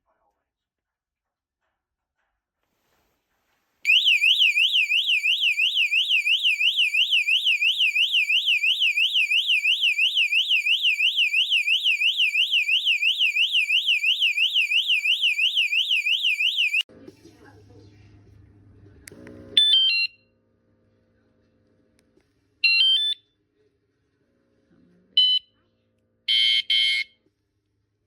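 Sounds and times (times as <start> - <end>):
bike alarm warbling siren: 3.9 - 16.9, 19.6 - 20.2, 22.7 - 23.2, 26.3 - 27.1.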